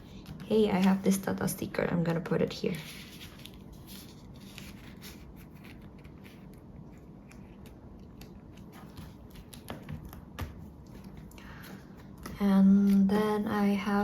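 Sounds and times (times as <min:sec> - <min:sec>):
low room hum: 0:00.0 - 0:14.0
plastic pages rustling: 0:02.5 - 0:13.0.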